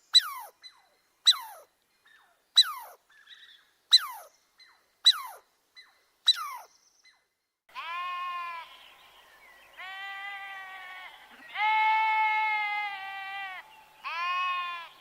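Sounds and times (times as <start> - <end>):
long steady bleats: 7.7 - 8.9, 9.7 - 15.0.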